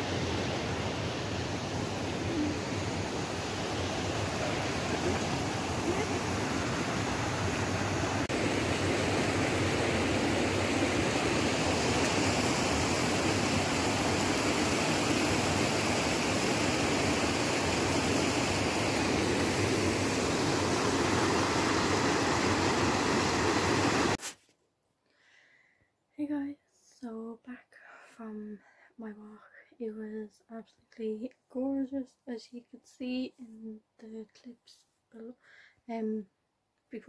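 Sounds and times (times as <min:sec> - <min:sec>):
river water rushing: 0:00.0 - 0:24.2.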